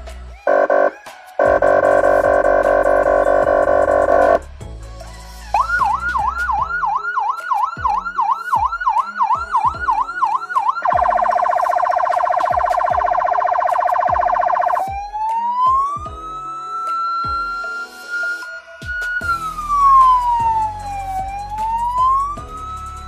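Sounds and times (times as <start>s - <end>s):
siren yelp: 0.4s - 4.4s, 5.6s - 23.0s
harsh buzzing siren horn tone: 0.5s - 4.4s
harsh rapid pulsing siren tone: 0.5s - 4.4s, 5.6s - 16.0s, 16.6s - 23.0s
rising siren wail: 0.5s - 4.4s, 5.6s - 23.0s.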